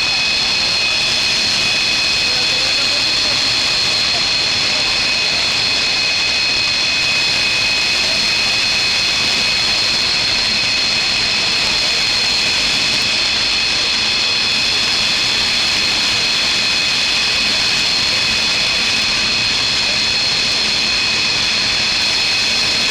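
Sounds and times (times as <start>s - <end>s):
jet engine roar with whine: 0.0s - 22.9s.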